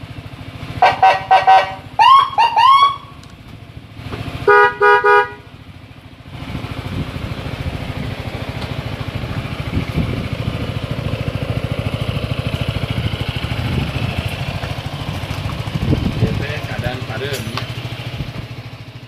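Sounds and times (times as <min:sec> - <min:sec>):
scooter engine throbbing: 0:00.0 - 0:19.0
short buzzy horn blasts: 0:00.8 - 0:03.1, 0:04.4 - 0:05.5.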